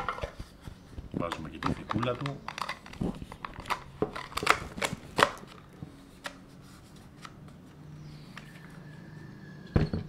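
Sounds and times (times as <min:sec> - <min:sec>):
plastic cover clicks and knocks: 0:01.2 - 0:05.6.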